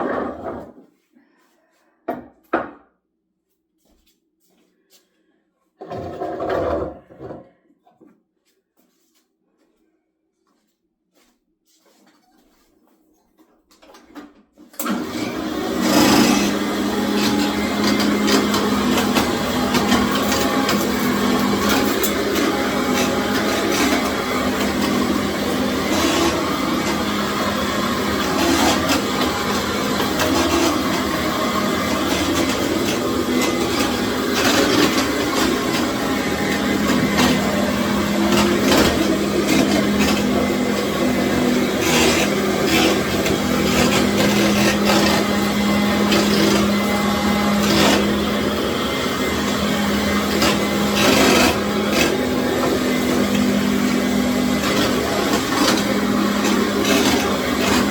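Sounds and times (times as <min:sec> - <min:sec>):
vacuum head scraping on tile: 0:00.0 - 0:00.9, 0:05.8 - 0:07.6, 0:14.8 - 0:57.9
vacuum cleaner running: 0:14.8 - 0:57.9.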